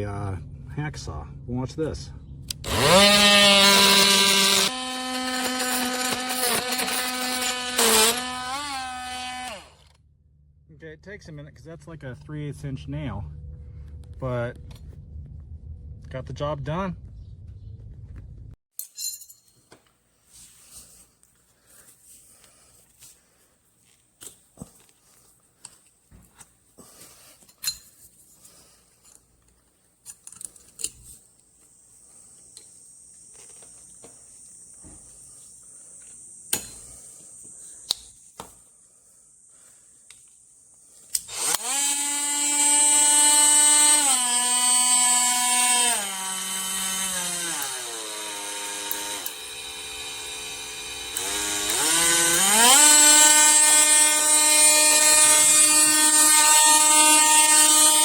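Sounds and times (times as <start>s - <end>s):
oscillating multi-tool motor whine: 2.6s - 10.0s, 41.2s - 58.0s.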